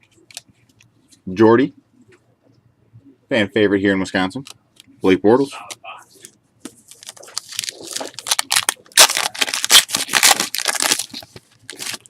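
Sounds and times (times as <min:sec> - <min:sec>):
foil wrapper crackling: 0:06.9 - 0:12.0.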